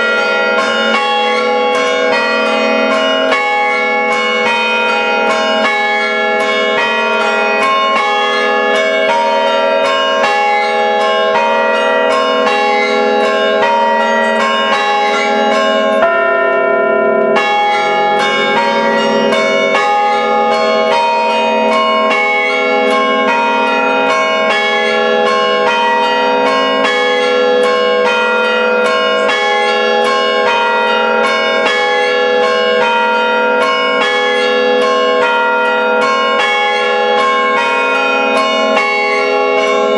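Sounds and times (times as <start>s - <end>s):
church bells chiming: 0.0s - 39.9s.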